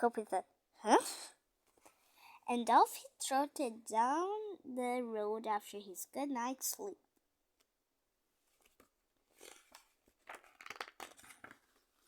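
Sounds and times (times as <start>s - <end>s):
paper rustling: 8.5s - 12.0s.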